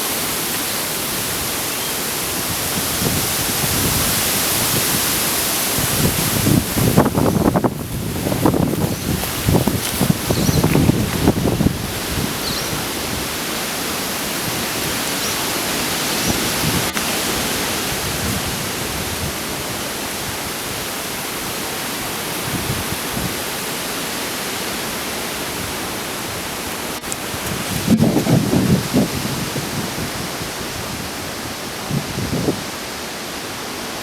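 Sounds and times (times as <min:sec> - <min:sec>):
wind rushing through foliage: 0:00.0 - 0:34.0
wind buffeting microphone: 0:01.0 - 0:20.9, 0:27.1 - 0:32.8.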